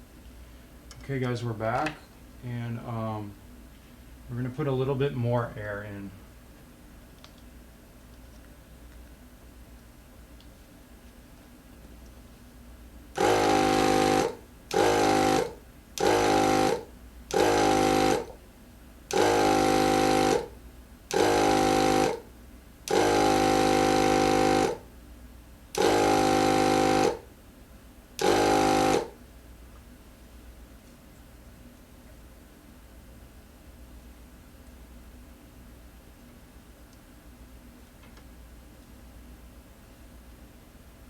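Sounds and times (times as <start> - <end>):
electric tire inflator: 13.2 - 18.4, 19.1 - 22.3, 22.9 - 24.8, 25.8 - 27.3, 28.2 - 29.2.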